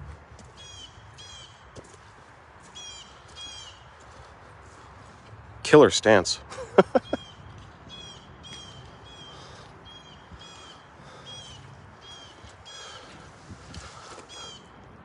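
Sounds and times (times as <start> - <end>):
low outdoor rumble: 0.0 - 15.0.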